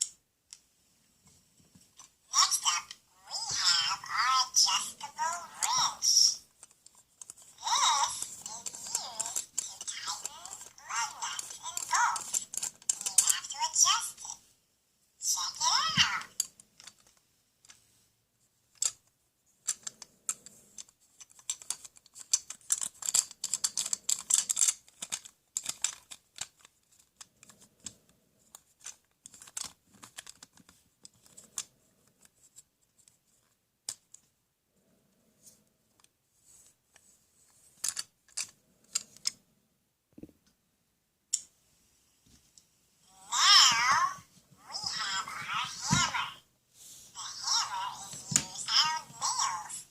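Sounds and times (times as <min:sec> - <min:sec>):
plastic toys clicking and rattling: 0:04.8 - 0:14.3, 0:15.4 - 0:17.8, 0:18.7 - 0:34.3, 0:36.9 - 0:39.4, 0:43.2 - 0:46.4, 0:47.2 - 0:49.9.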